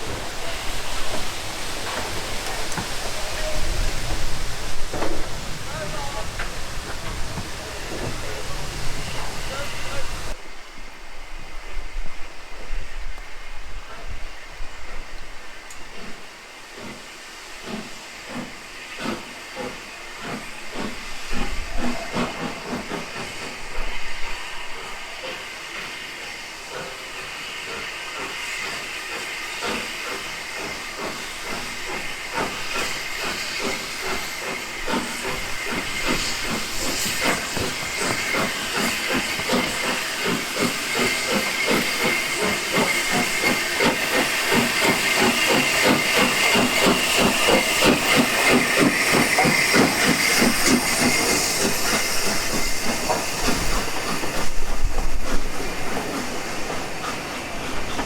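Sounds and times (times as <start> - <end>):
steam hissing: 0.0 - 58.0
steam locomotive exhaust beats: 0.0 - 58.0.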